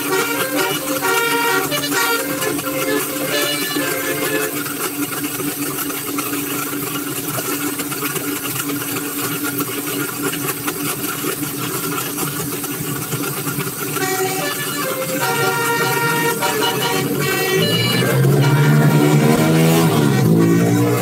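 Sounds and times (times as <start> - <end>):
multi-tone bus horn: 0.0 - 4.7, 14.0 - 21.0
bus diesel engine running: 0.0 - 6.5, 13.8 - 21.0.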